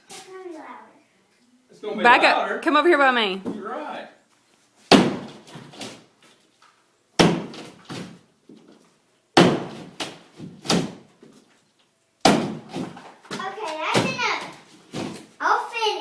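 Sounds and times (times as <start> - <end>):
sledgehammer striking drywall: 4.9 - 6.0, 7.2 - 8.2, 9.4 - 11.0, 12.2 - 14.2
wallboard breaking knocks: 4.9 - 6.0, 7.2 - 8.2, 9.4 - 11.1, 12.2 - 14.2.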